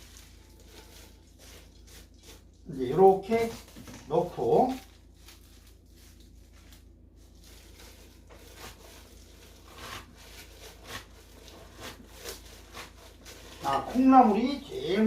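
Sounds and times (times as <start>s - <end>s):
sprouts rustling into a pot: 0.0s - 15.0s.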